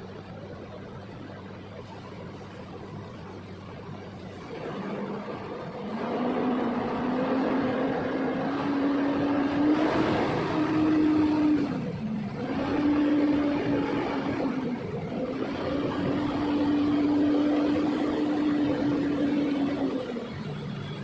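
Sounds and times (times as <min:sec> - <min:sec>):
motor running with rising pitch: 0:04.7 - 0:20.8.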